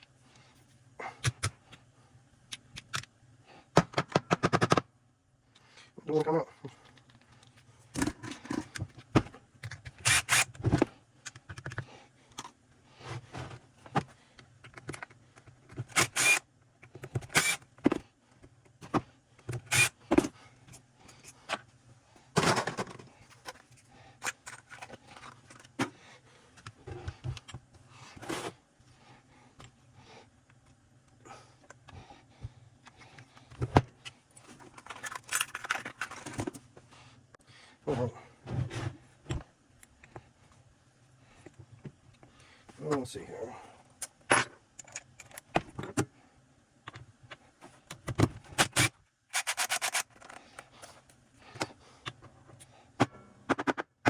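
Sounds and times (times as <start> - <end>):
metal parts clicking and scraping: 9.8 - 10.5, 34.6 - 36.5, 48.6 - 50.9.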